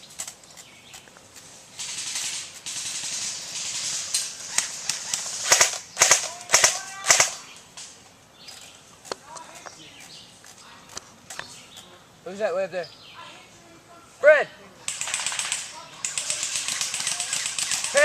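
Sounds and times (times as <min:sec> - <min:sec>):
rustling hiss: 0:00.0 - 0:18.0
airsoft gun cracks: 0:01.8 - 0:08.0, 0:14.9 - 0:18.0.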